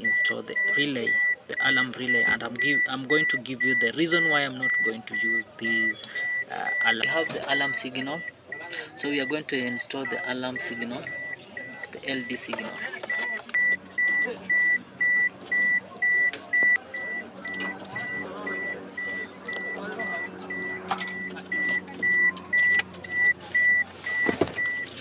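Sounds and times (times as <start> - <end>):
short high electronic beeps: 20.5 - 24.8.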